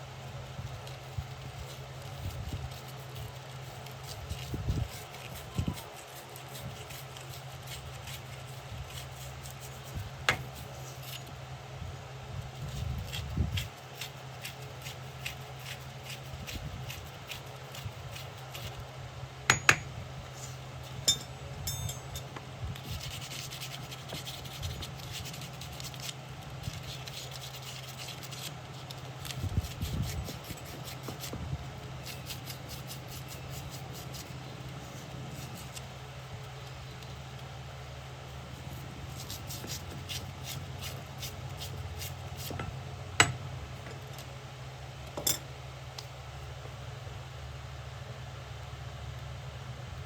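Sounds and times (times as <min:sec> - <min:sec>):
steady low hum: 0:00.0 - 0:50.0
ringing metallic clinks: 0:19.5 - 0:19.9, 0:21.0 - 0:22.4
scraping strokes on metal: 0:19.5 - 0:22.4.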